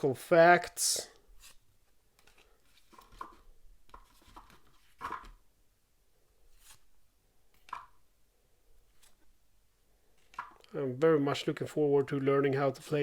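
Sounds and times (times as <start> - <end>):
playing cards rustling: 1.4 - 5.4, 6.5 - 6.9, 8.8 - 9.3.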